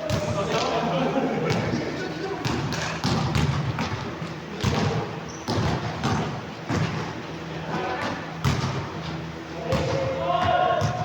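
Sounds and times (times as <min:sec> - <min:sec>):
basketball bouncing on court floor: 0:02.4 - 0:04.0, 0:04.6 - 0:07.0, 0:08.4 - 0:08.8, 0:09.7 - 0:11.0.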